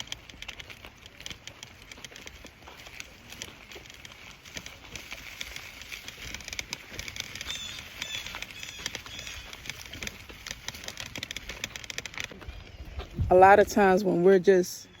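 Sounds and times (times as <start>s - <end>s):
footsteps crunching on leaves: 0.0s - 13.2s
bird chirping: 7.4s - 9.8s.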